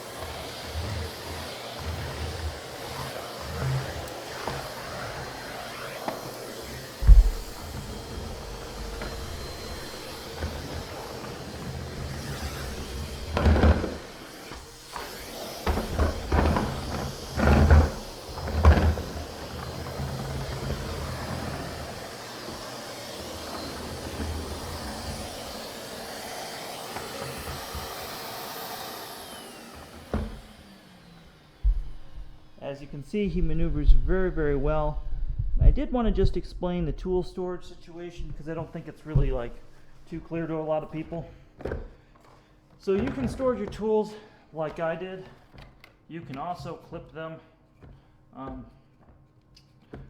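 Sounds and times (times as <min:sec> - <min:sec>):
vacuum cleaner running: 0:00.0 - 0:50.0
thumps and knocks on floor: 0:07.0 - 0:20.6, 0:31.6 - 0:32.4.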